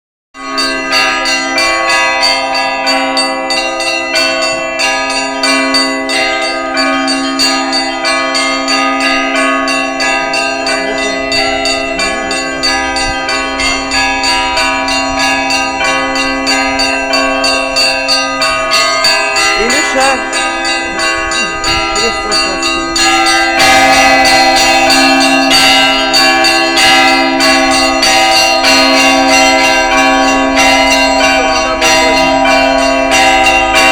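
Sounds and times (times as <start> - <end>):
church bells pealing: 0.4 - 33.9.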